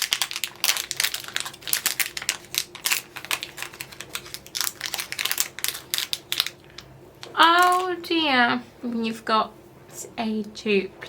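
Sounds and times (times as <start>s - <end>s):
packaging crinkling and crackling: 0.0s - 8.1s.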